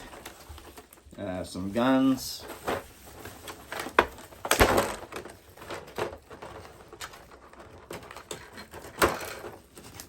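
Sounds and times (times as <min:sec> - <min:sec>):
plastic clicks and rustles: 0:02.4 - 0:10.0.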